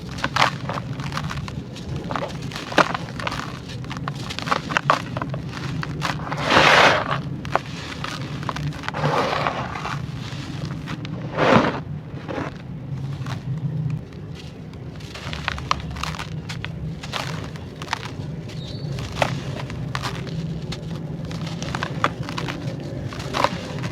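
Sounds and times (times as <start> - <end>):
sandy clay crunching and crumbling: 0.0 - 23.9
low hum: 8.5 - 18.6.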